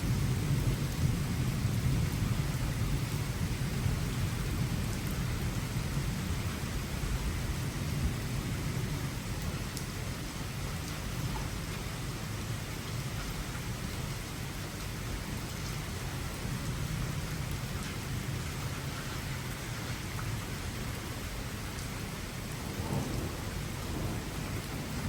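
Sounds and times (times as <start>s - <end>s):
thunder rumbling: 0.0s - 11.6s, 22.0s - 25.0s
rain falling: 0.0s - 25.0s.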